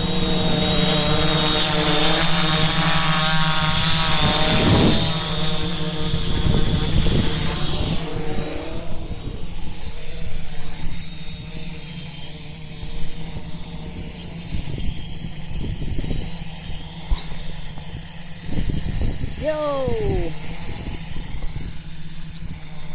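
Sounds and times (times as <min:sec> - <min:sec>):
quadcopter motors whining: 0:00.0 - 0:22.9
wind buffeting microphone: 0:06.0 - 0:10.0, 0:17.8 - 0:21.8.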